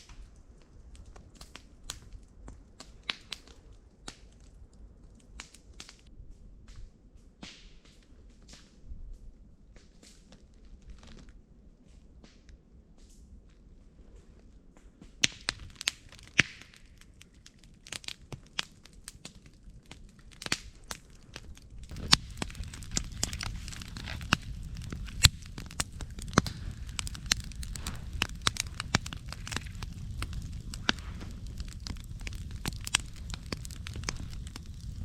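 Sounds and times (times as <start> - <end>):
campfire crackling and popping: 0.0 - 6.1, 14.5 - 35.0
low rush of burning: 15.3 - 35.0.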